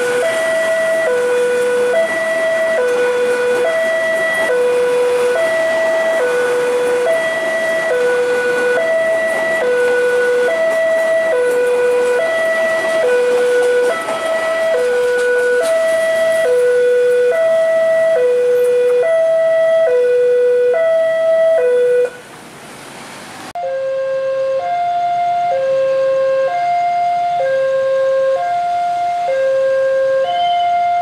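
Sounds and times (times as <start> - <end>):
level crossing two-tone alarm: 0.0 - 22.3, 23.6 - 31.0.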